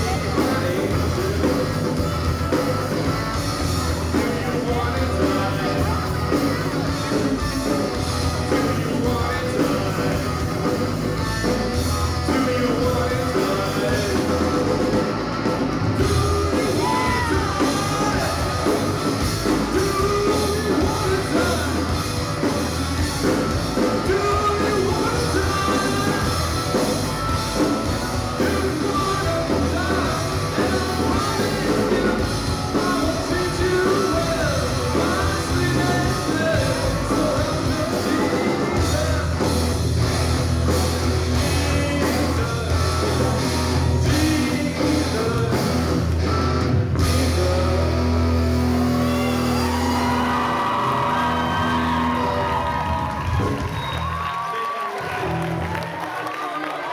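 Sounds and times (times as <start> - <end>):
person singing: 0.0 - 15.1, 16.0 - 39.8, 41.2 - 46.4
rock band playing live: 0.0 - 56.9.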